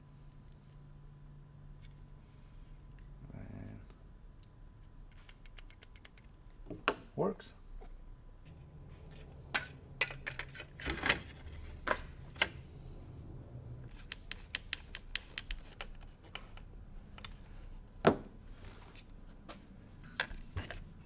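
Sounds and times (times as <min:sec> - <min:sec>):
low hum: 0:08.0 - 0:14.4
clicks and taps on steering wheel: 0:13.9 - 0:16.6.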